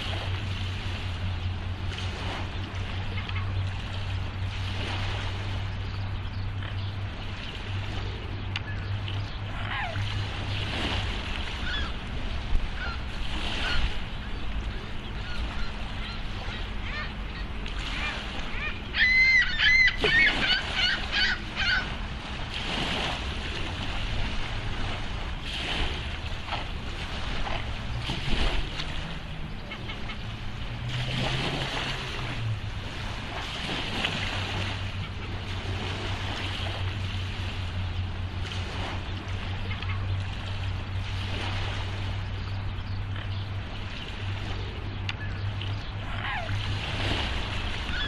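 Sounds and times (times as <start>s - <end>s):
low hum: 0.0s - 48.0s
water lapping: 0.0s - 48.0s
wind: 0.0s - 48.0s
swans honking: 15.2s - 22.3s.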